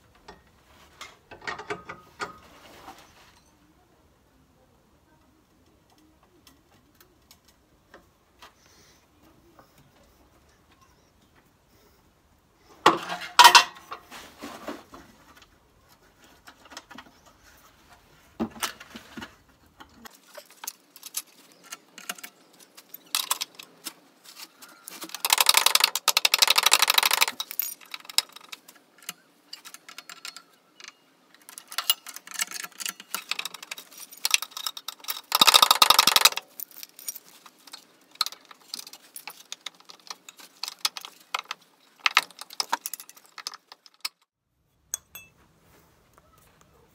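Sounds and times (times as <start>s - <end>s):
metal hand tools clinking: 20.1s - 44.2s, 44.8s - 45.4s
rapid dense clicking: 25.1s - 28.4s, 33.1s - 36.5s.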